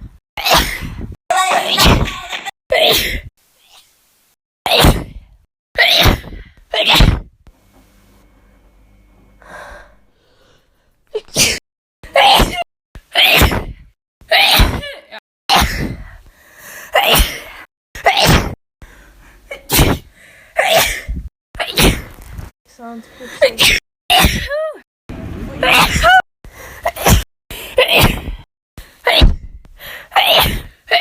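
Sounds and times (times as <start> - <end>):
woman sneezing: 2.7 - 3.3, 4.7 - 5.2, 11.2 - 12.6, 17.0 - 18.6, 19.5 - 22.0, 23.4 - 24.8, 27.8 - 28.4, 30.1 - 31.0.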